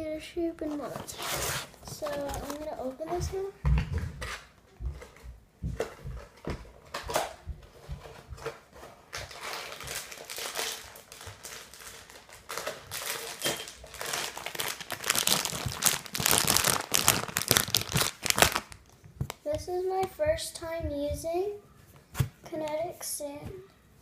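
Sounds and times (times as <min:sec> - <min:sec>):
packaging crinkling: 0:00.6 - 0:03.4, 0:08.4 - 0:19.5.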